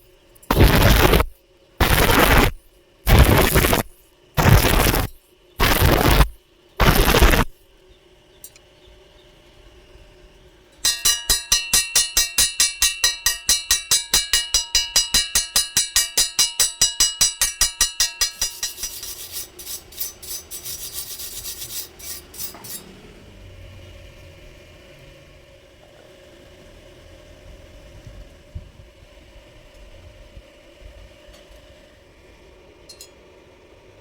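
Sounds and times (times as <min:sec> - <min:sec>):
scraping strokes on steel: 0:00.4 - 0:07.6, 0:10.8 - 0:23.0.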